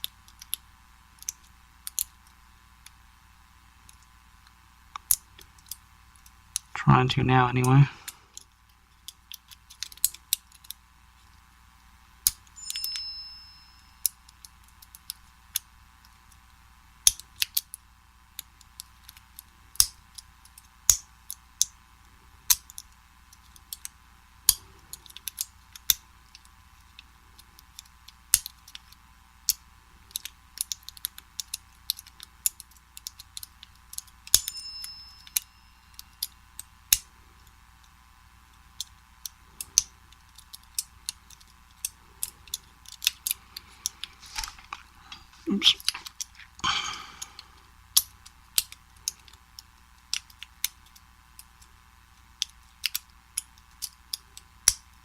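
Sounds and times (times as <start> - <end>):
brief metallic ring: 12.6 - 14.0, 34.4 - 35.9.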